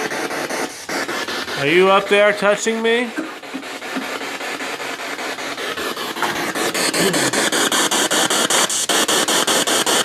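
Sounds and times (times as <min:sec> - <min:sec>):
pulsing radio static: 0:01.6 - 0:04.4.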